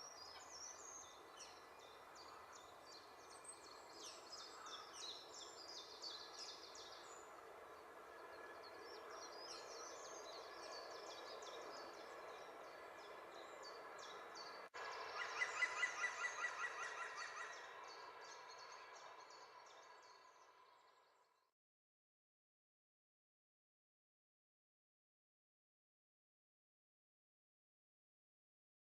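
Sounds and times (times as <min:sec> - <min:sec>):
songbirds chirping: 0:00.0 - 0:21.5.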